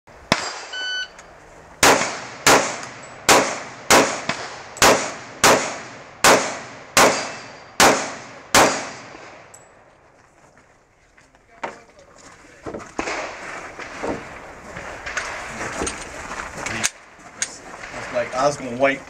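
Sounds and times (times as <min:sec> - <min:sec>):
shot timer beep: 0:00.7 - 0:01.2
pistol shots: 0:01.8 - 0:09.4.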